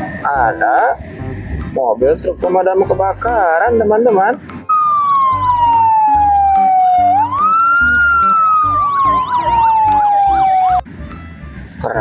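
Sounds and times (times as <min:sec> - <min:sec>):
fire engine siren wailing: 0:04.7 - 0:10.9.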